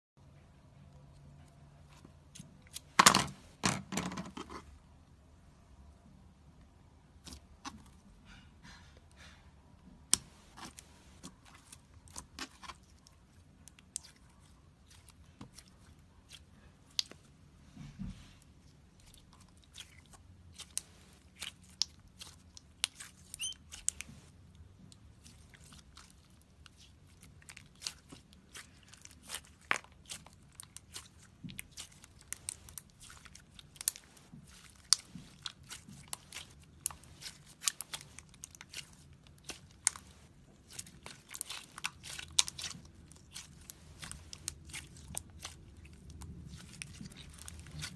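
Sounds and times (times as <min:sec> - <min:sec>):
slime crackling and popping: 0:25.2 - 0:47.9.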